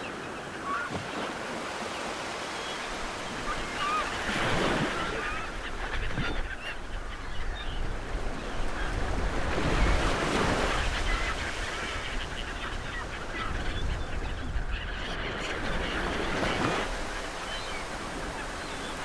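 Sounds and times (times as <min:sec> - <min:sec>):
bird calls: 0:00.0 - 0:19.0
ocean surf washing ashore: 0:15.3 - 0:19.0.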